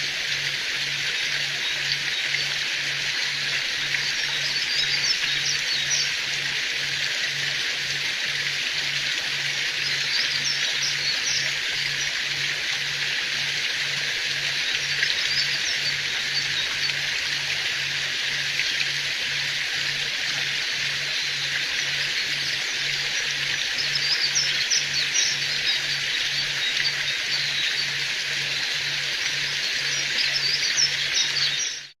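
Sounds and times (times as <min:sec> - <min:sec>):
small birds chirping: 0:21.7 - 0:32.0.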